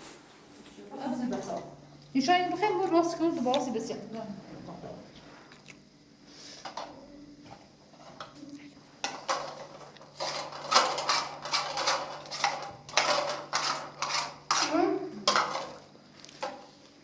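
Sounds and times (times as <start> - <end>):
steady low hum: 0.0 - 17.0
dishes and cutlery clattering: 9.0 - 15.8.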